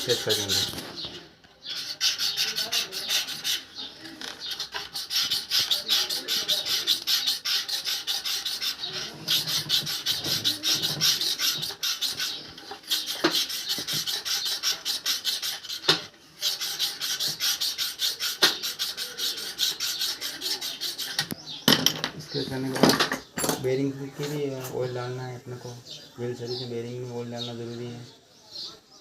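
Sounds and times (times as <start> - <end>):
metal tool scraping inside wheel: 0.0 - 0.8, 1.6 - 3.7, 4.3 - 21.4.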